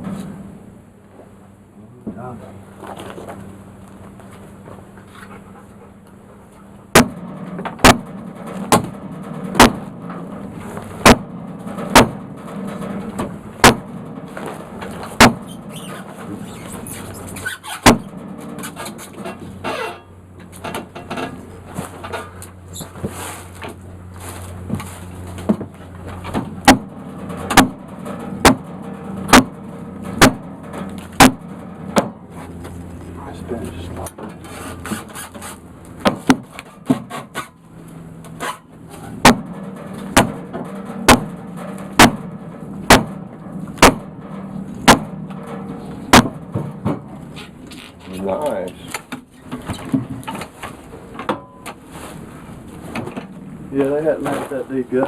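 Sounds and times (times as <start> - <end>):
sawmill cutting log: 34.4 - 37.6.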